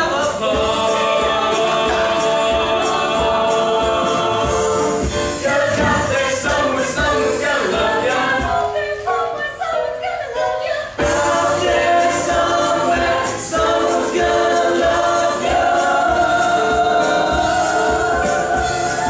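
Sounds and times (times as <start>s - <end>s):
group singing show tune: 0.0s - 19.0s
steady beat: 11.0s - 19.0s.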